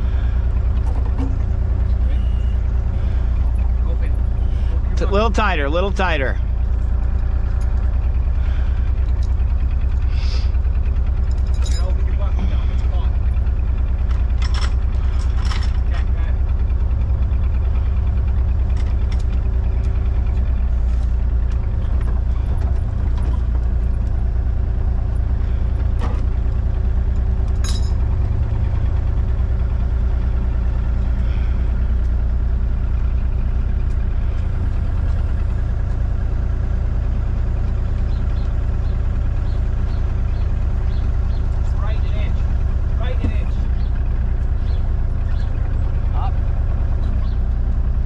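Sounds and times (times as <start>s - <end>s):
heavy equipment engine running: 0.0s - 48.0s
short metallic clinks: 11.3s - 12.1s, 27.6s - 28.1s.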